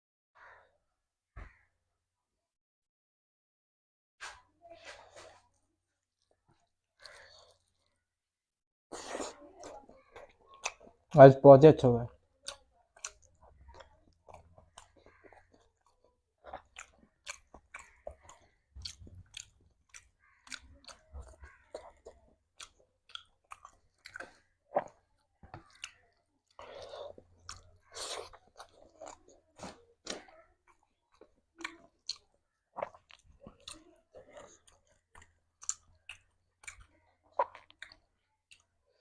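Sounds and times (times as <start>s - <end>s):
person chewing food: 4.3s - 8.1s, 8.9s - 11.2s, 12.1s - 39.0s.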